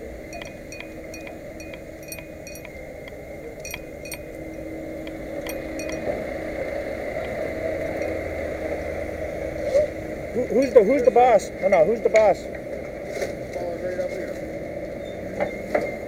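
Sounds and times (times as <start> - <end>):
light metallic clinking: 0.3 - 8.2.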